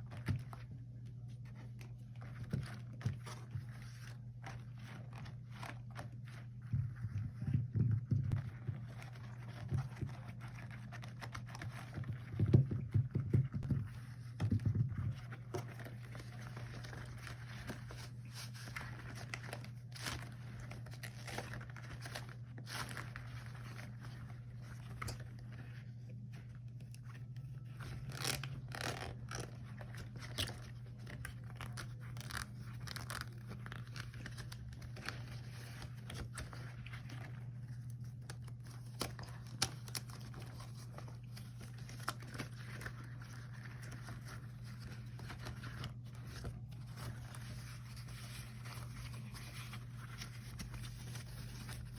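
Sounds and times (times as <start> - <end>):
rubber gloves crackling: 15.2 - 51.9.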